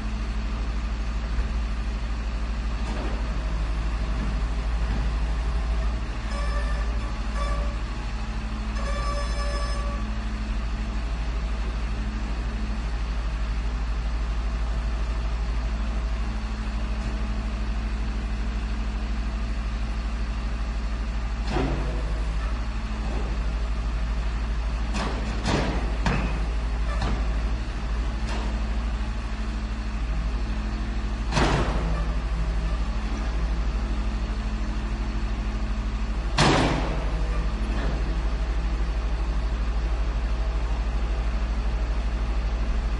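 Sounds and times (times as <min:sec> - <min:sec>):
garbage truck engine idling: 0:00.0 - 0:42.9
sharp bangs and knocks: 0:24.9 - 0:27.3, 0:31.3 - 0:32.2, 0:36.3 - 0:38.1.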